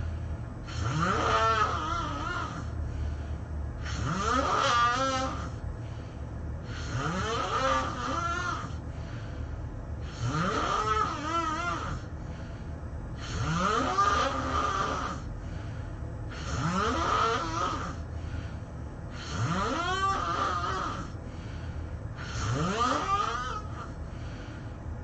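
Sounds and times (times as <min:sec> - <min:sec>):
person snoring: 0:00.6 - 0:02.8, 0:03.8 - 0:05.6, 0:06.7 - 0:08.8, 0:10.0 - 0:12.2, 0:13.2 - 0:15.3, 0:16.3 - 0:18.1, 0:19.1 - 0:21.2, 0:22.2 - 0:24.4.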